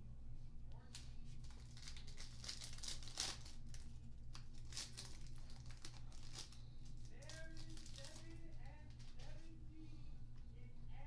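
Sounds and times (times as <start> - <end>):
plastic wrapper tearing and crinkling: 0.9 - 9.2.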